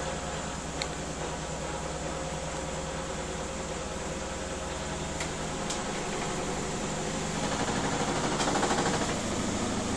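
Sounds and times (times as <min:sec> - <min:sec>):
washing machine humming: 0:00.0 - 0:09.9.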